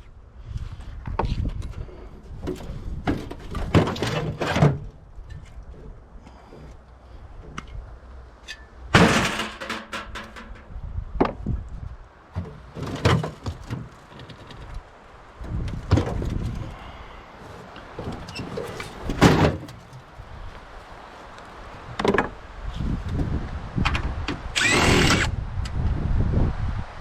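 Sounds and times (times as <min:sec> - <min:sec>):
scrap metal clanks and bangs: 0:02.5 - 0:05.4, 0:08.4 - 0:10.7, 0:12.4 - 0:14.5, 0:17.4 - 0:20.0.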